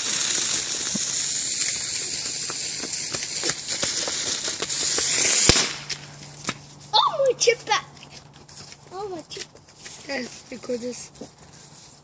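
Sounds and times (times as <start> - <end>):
firework hissing: 0.0 - 6.7
small crackles: 0.0 - 7.0.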